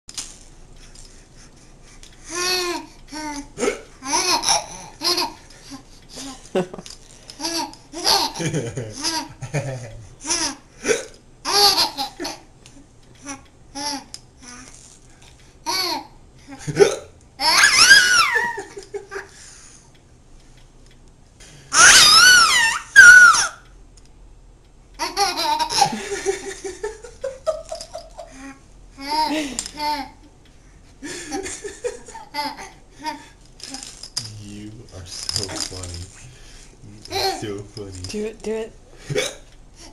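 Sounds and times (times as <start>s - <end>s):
baby laughing: 2.3s - 6.4s, 7.4s - 9.4s, 11.5s - 12.5s, 17.4s - 19.2s, 21.7s - 23.6s, 25.0s - 26.4s, 27.4s - 30.2s, 31.8s - 33.3s, 37.1s - 37.4s.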